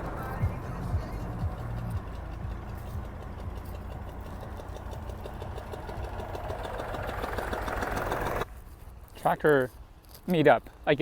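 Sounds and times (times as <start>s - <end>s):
tractor engine running: 0.0s - 8.6s.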